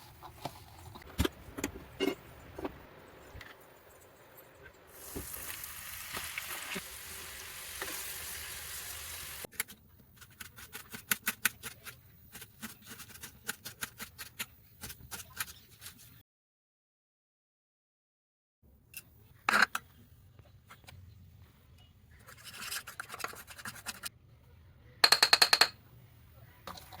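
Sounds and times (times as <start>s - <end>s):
corn frying in hot oil: 4.8s - 9.5s.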